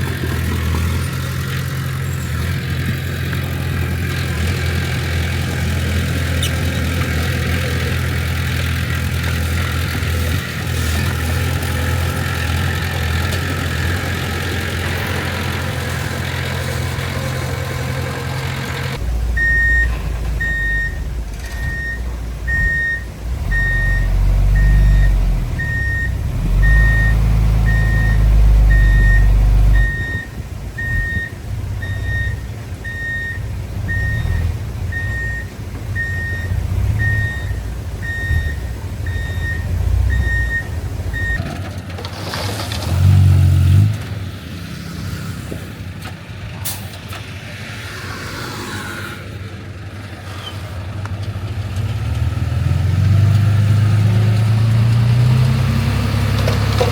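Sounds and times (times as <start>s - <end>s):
diesel engine running: 0.0s - 47.7s
reversing alarm beeping: 19.4s - 41.4s.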